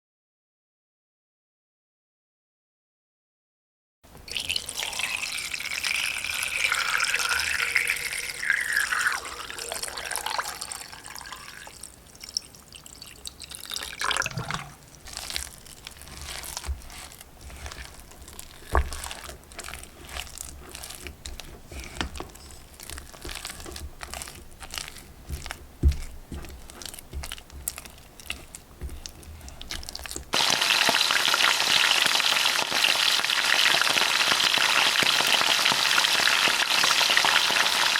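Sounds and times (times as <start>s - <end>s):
food frying in hot oil: 4.3s - 14.0s, 29.8s - 37.9s
water pouring into a vessel: 4.3s - 15.1s
dough kneaded by hand: 4.3s - 31.9s.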